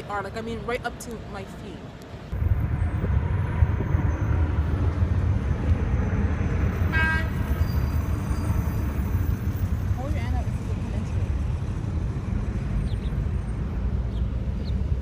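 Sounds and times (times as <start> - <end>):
loud low rumble: 2.3 - 12.6.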